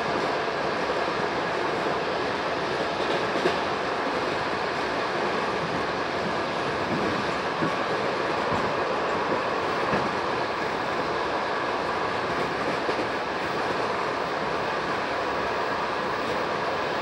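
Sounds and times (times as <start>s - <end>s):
train wheels rumbling on rail: 0.0s - 17.0s.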